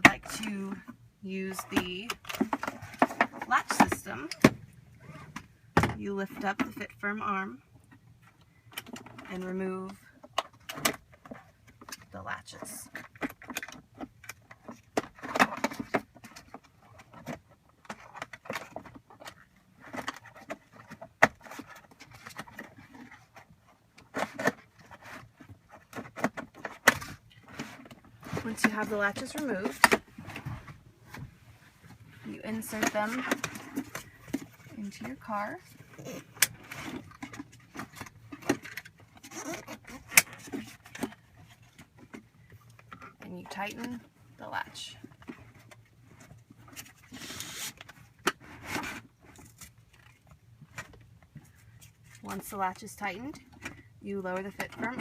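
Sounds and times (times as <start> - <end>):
metal connectors rattling and scraping: 32.3 - 47.2.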